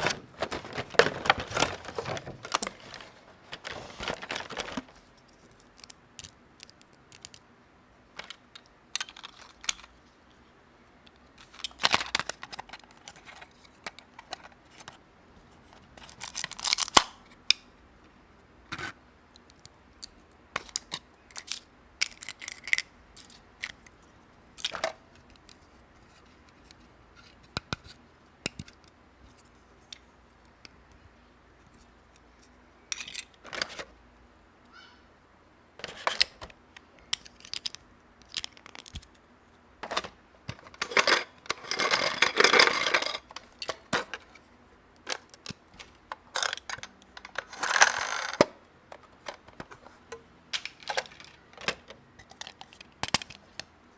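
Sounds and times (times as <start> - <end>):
packaging rustling: 0.0 - 5.1
plastic toy pieces clicking: 46.2 - 48.5.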